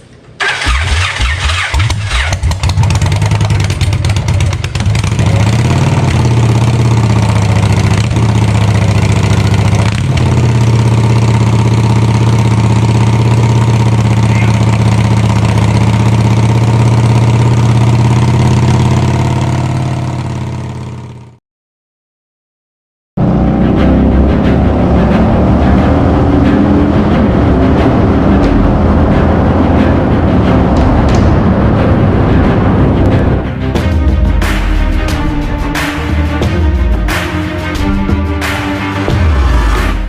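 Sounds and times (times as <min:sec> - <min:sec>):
motorcycle engine starting and idling: 0:00.3 - 0:21.3.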